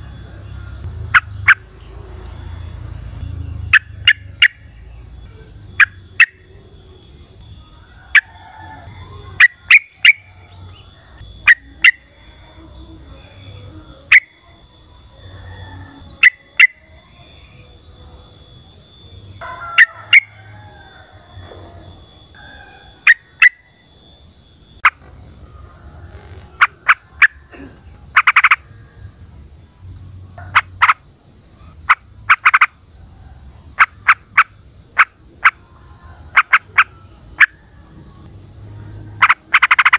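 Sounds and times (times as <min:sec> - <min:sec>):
bird chirping: 0:00.0 - 0:07.8
insects chirping: 0:00.0 - 0:39.9.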